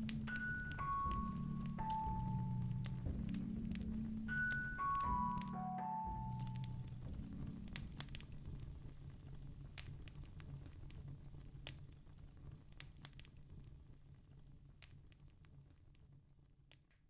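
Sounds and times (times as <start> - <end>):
piano note: 0.0 - 8.1
low rumble: 0.0 - 8.7
wood fire crackling and popping: 0.0 - 17.0.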